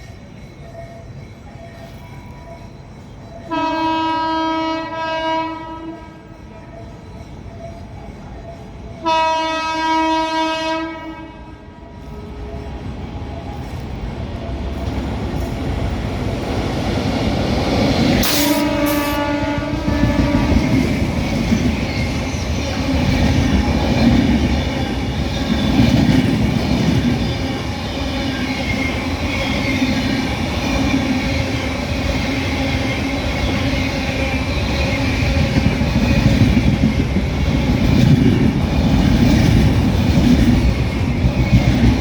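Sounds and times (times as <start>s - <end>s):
train rumble: 0.0s - 42.0s
train horn blasts: 3.5s - 6.3s, 9.0s - 11.8s, 18.2s - 20.8s.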